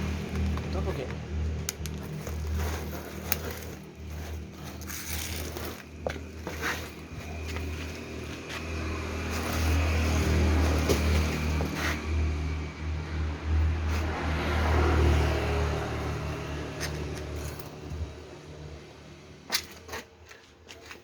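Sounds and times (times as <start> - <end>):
packaging rustling: 0.0 - 8.7
scrapes and clicks of handling: 0.1 - 10.0, 19.5 - 21.0.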